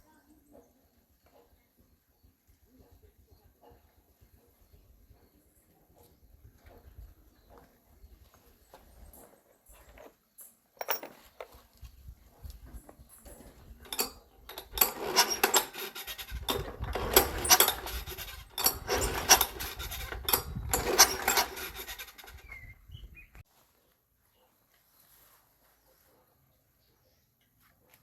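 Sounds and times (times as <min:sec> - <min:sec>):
hand tools clinking and scraping: 0:08.5 - 0:22.7.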